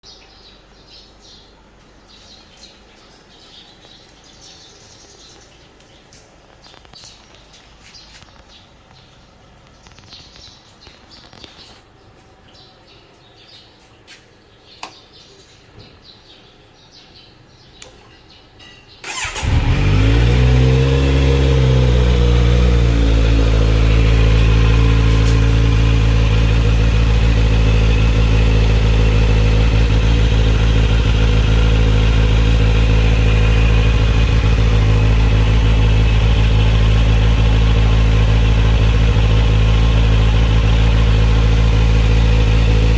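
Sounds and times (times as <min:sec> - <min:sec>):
motorcycle engine starting and idling: 0:19.0 - 0:42.9.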